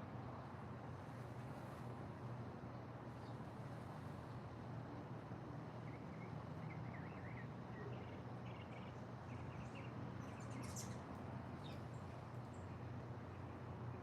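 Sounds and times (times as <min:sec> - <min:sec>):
songbirds chirping: 0:05.9 - 0:14.0.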